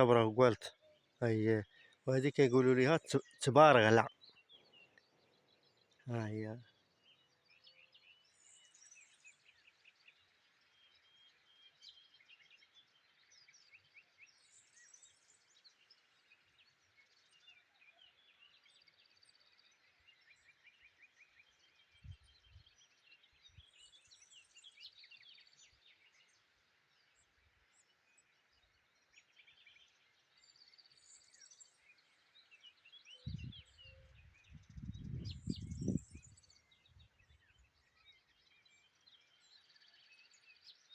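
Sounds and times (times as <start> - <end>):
songbird singing high notes: 0.0 - 4.1
muffled microphone rumbles: 33.3 - 33.7, 34.5 - 36.3.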